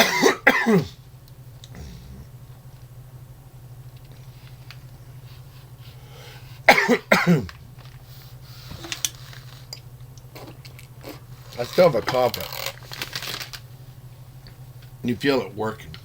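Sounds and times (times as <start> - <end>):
man coughing: 0.0 - 1.0, 6.7 - 7.6.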